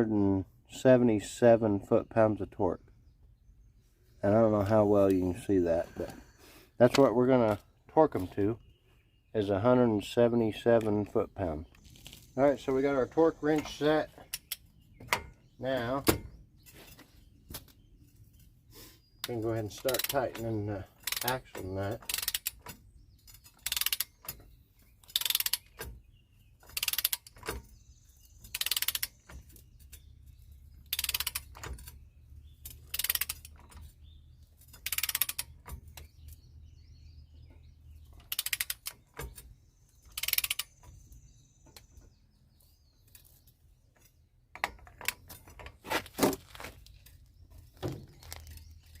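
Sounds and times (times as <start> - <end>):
ratchet wrench clicking: 19.8 - 20.3, 21.0 - 21.4, 22.0 - 24.4, 25.0 - 25.9, 26.6 - 27.6, 28.5 - 29.2, 30.8 - 31.9, 32.6 - 33.7, 34.6 - 35.9, 38.2 - 39.4, 40.1 - 40.8.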